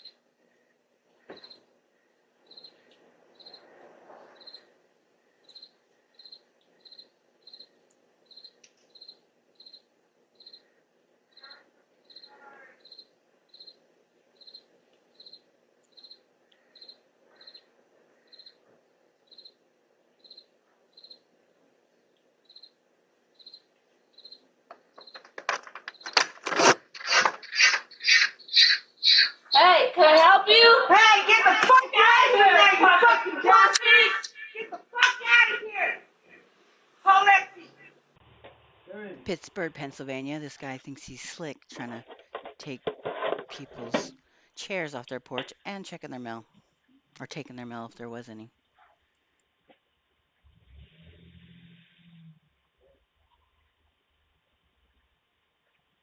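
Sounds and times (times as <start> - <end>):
cricket chirping: 1.2 - 1.7, 2.4 - 18.6, 19.2 - 19.6, 20.2 - 21.4, 22.4 - 31.8.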